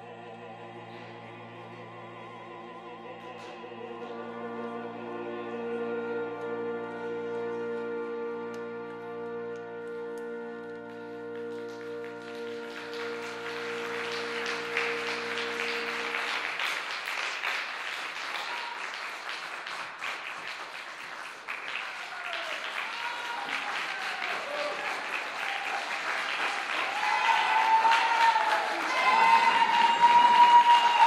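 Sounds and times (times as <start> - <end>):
orchestra sustained chord: 0.0 - 17.0
audience applause: 10.6 - 31.0
audience whoops: 18.2 - 19.3, 21.6 - 31.0.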